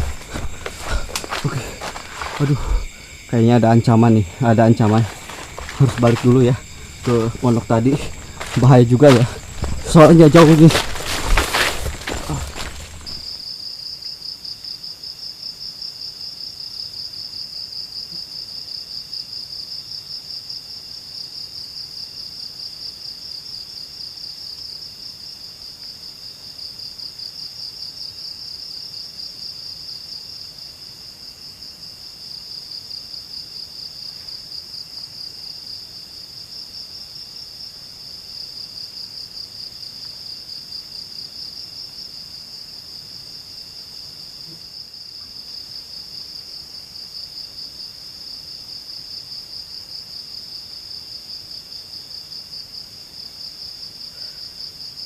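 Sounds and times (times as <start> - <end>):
insects trilling high: 0.0 - 13.4
lower insect calls: 0.0 - 55.0.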